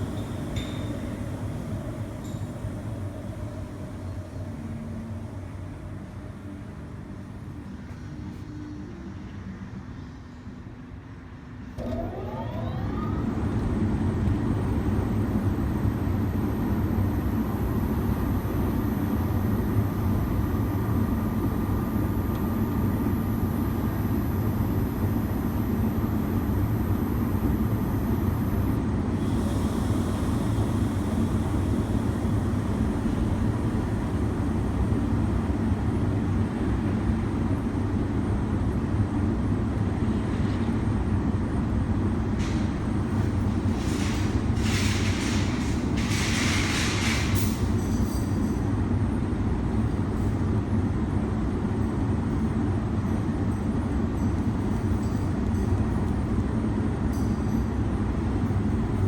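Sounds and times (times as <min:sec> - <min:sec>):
air compressor running: 0:15.0 - 0:36.3, 0:42.4 - 0:47.8.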